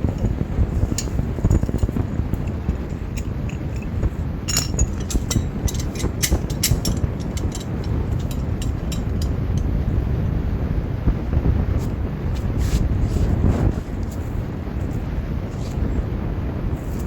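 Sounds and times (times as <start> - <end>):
metal parts clinking and scraping: 0.0 - 9.7
wind rumble on microphone: 0.0 - 17.0.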